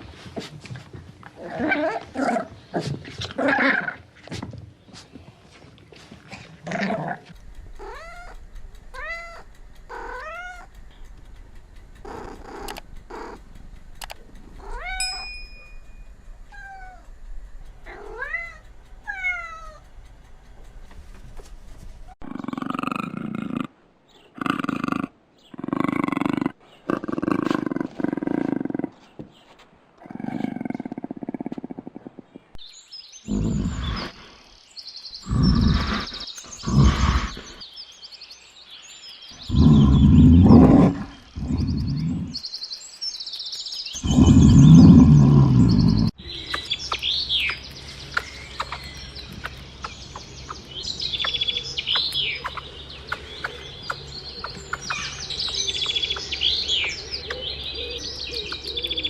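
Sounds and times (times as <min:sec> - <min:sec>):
low animal calls: 0:06.7 - 0:13.6, 0:33.2 - 0:34.4, 0:35.2 - 0:37.6, 0:39.4 - 0:42.4, 0:44.0 - 0:47.0
cats meowing: 0:07.8 - 0:10.7, 0:14.6 - 0:15.2, 0:16.5 - 0:17.1, 0:17.9 - 0:19.8.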